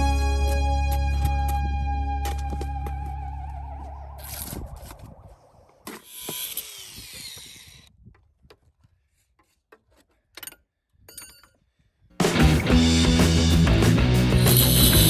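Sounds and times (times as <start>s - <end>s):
loud rock music: 0.0s - 3.1s, 12.2s - 15.0s
power tool running: 6.0s - 7.9s.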